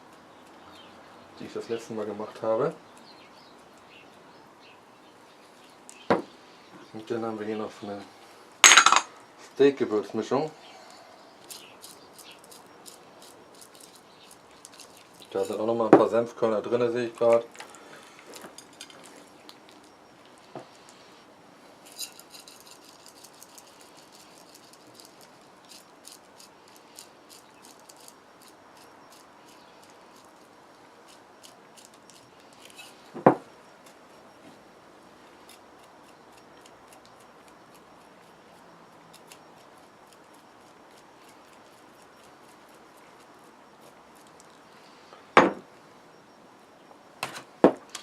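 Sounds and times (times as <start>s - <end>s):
spices pattering onto meat: 10.8s - 16.2s, 21.9s - 34.3s, 35.2s - 44.8s.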